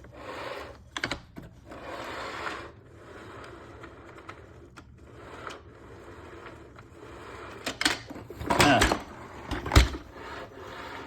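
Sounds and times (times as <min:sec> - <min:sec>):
parts rustling and scraping: 0:03.5 - 0:11.0.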